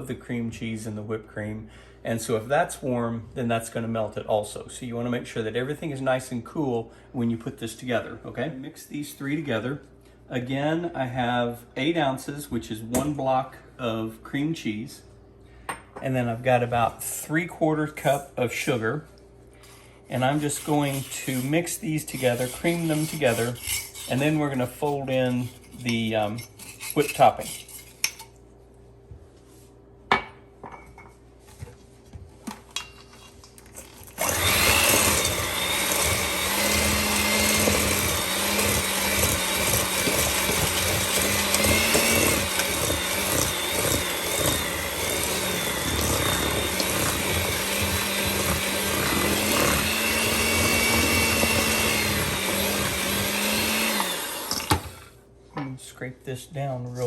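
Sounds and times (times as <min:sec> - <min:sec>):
electric mixer motor: 0:34.0 - 0:55.1.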